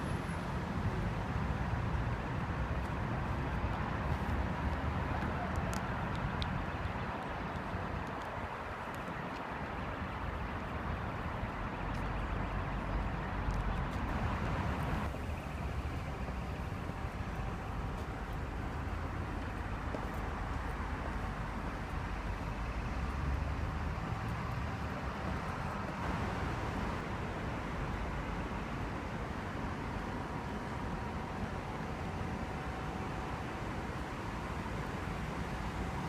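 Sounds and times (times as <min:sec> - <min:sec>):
vehicle rumble: 0:00.0 - 0:36.0.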